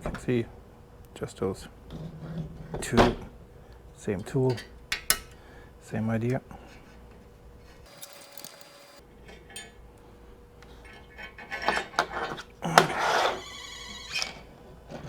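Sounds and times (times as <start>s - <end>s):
metal screws clicking and scraping: 7.8s - 9.7s.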